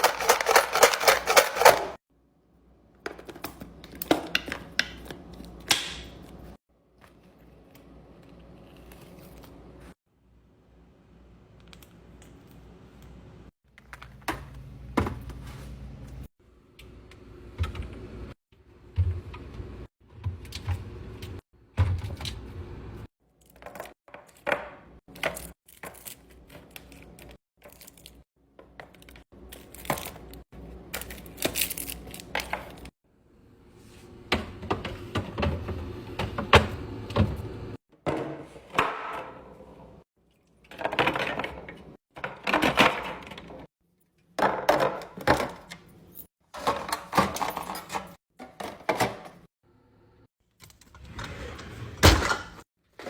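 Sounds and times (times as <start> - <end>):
packages knocking and rattling: 0.0 - 2.0.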